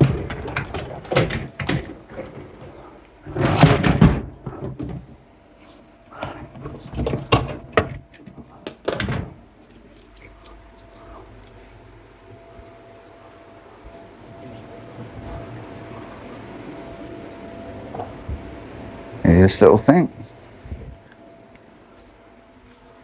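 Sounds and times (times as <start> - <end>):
dishwasher rack clattering: 0.0 - 5.2, 6.2 - 9.4.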